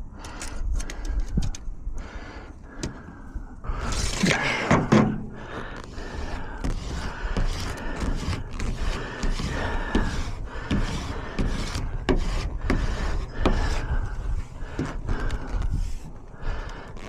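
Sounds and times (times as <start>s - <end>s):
sharp clicks: 0.2s - 1.7s
rubbing strokes on vinyl lettering: 5.7s - 17.0s.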